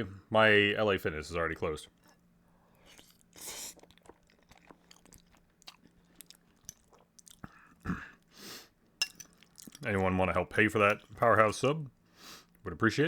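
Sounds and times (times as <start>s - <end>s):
person chewing food: 1.9s - 9.9s, 10.8s - 11.4s.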